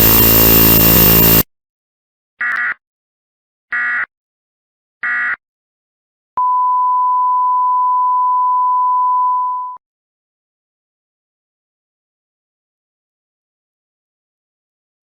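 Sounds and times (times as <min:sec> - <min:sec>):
digital data burst: 0:00.0 - 0:01.4
steady single-pitch tone: 0:00.0 - 0:01.4.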